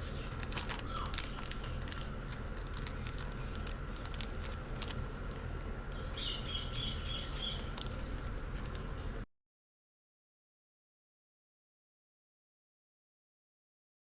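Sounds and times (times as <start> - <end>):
bird chirping: 5.9 - 7.8, 8.8 - 9.2.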